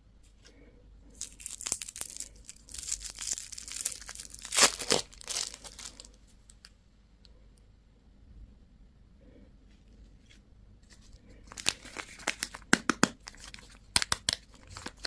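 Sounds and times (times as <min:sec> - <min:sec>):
candy wrapper crinkling: 0:01.1 - 0:06.7, 0:10.9 - 0:15.0.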